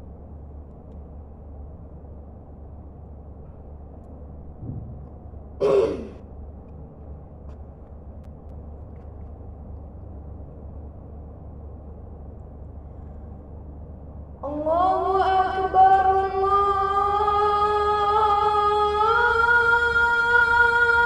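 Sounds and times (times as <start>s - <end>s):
steady low hum: 0.0s - 21.0s
man coughing: 5.6s - 6.2s.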